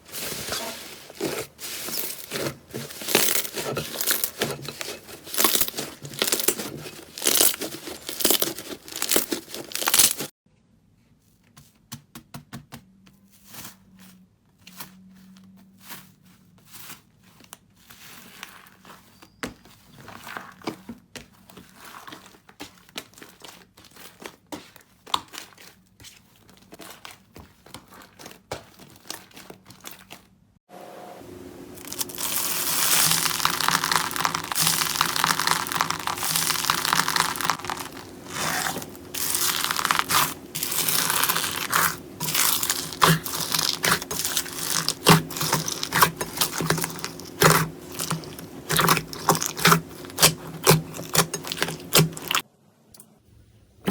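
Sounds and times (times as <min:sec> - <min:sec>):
slime squishing and crackling: 0:00.0 - 0:10.4, 0:20.0 - 0:30.4, 0:31.8 - 0:52.4.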